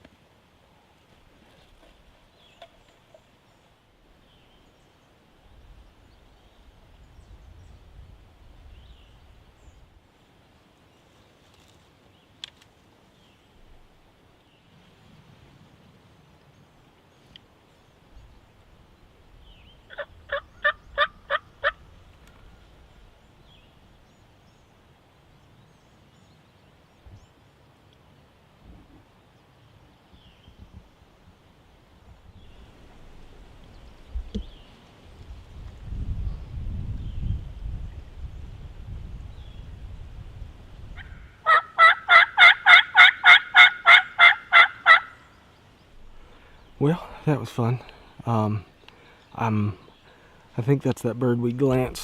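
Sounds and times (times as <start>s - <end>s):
faint songbird chirps: 0.7s - 31.2s, 32.1s - 40.0s, 44.8s - 52.0s
turkey yelping: 19.9s - 21.8s, 41.0s - 45.2s.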